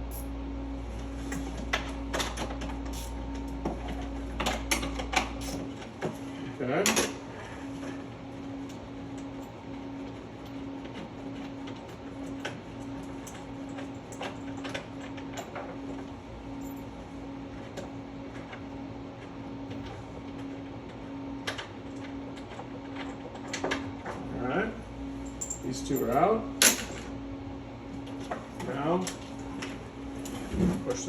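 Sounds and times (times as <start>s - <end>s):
pulsing low hum: 0.0s - 6.6s.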